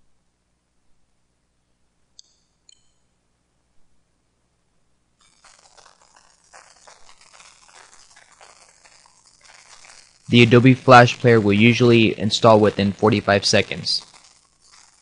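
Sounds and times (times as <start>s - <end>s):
faint crackling and rustling: 5.1s - 15.0s.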